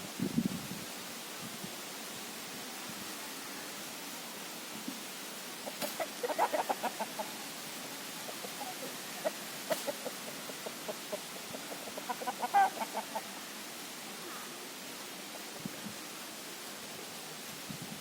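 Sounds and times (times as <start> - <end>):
chickens clucking: 5.6 - 13.4.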